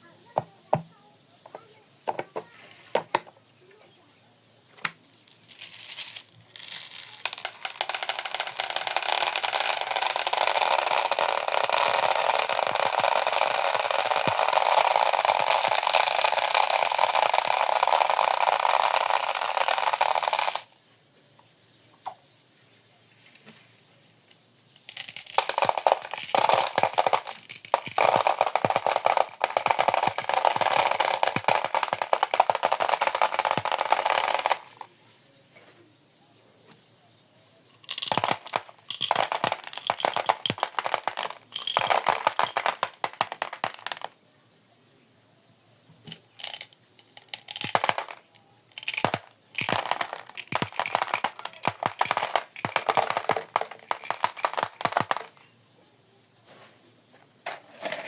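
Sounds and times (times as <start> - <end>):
marbles rattling down plastic run: 5.2 - 20.7, 24.8 - 34.9, 37.8 - 44.2, 46.1 - 55.4.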